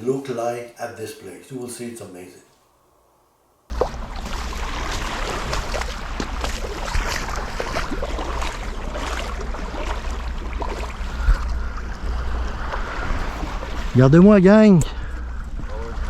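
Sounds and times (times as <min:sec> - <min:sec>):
water splashing and churning: 0:03.7 - 0:16.0
wind rumble on microphone: 0:03.7 - 0:16.0.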